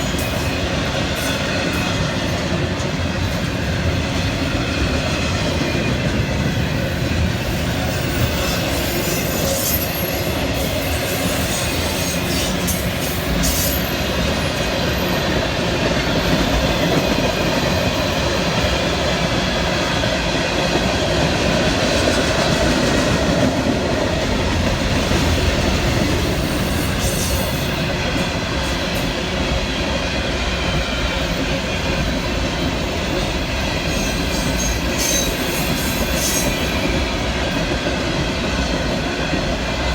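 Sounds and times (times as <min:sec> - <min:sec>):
clickety-clack over rail joints: 0:00.0 - 0:39.9
train wheels rumbling on rail: 0:00.0 - 0:39.9
high wheel squeals: 0:07.5 - 0:15.1, 0:33.9 - 0:36.8.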